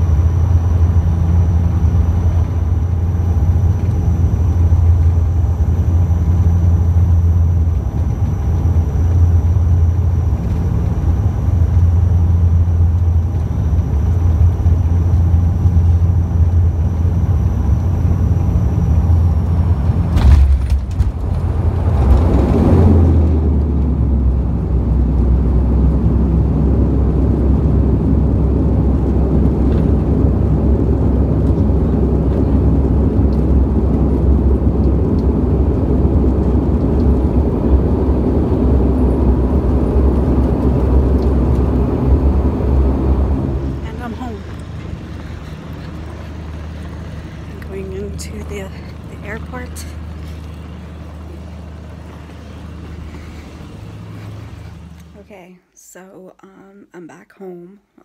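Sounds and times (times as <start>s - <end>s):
propeller hum: 0.0s - 55.3s
airliner cabin drone: 0.0s - 56.0s
rushing air: 19.6s - 47.7s, 50.0s - 55.2s.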